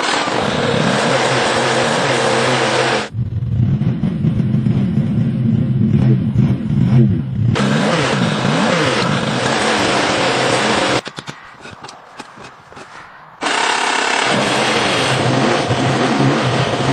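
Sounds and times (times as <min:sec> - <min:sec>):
car engine revving: 0:00.0 - 0:16.9
rushing noise: 0:07.6 - 0:16.9.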